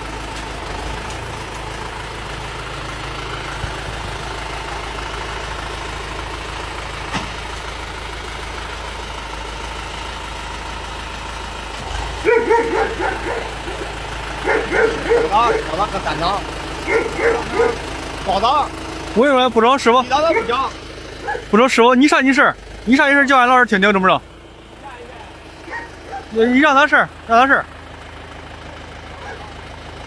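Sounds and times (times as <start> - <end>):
tractor engine running: 0.0 - 30.0
dogs barking: 12.1 - 18.2, 20.0 - 21.7, 25.6 - 26.6, 29.1 - 29.7.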